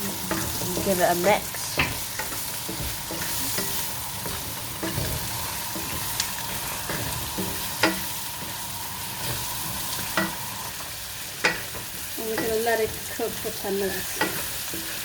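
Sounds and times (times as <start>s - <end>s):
spoon stirring and scraping: 0.0s - 13.2s
potatoes sizzling in oil: 0.0s - 15.0s
spoon knocking against pan: 6.8s - 8.2s, 10.0s - 10.4s, 11.4s - 12.6s.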